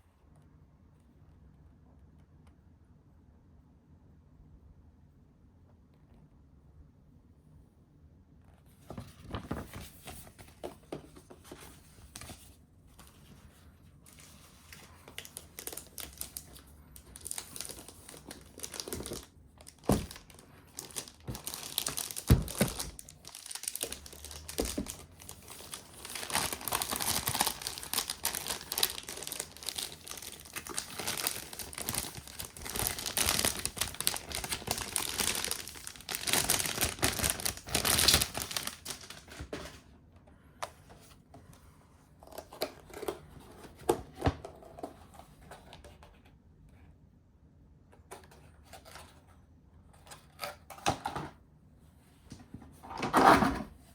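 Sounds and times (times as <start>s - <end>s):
wrapping crinkling and rustling: 8.9s - 39.8s
thumps of packaging: 17.6s - 25.1s.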